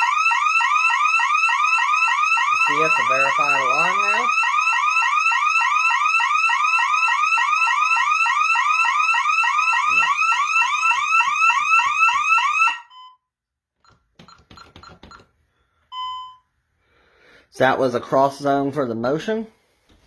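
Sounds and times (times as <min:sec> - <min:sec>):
alarm siren yelping: 0:00.0 - 0:13.2
short beep: 0:12.9 - 0:14.4, 0:15.9 - 0:16.5.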